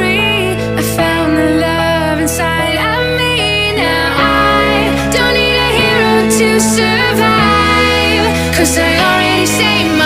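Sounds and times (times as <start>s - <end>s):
melody over bass notes: 0.0s - 10.0s.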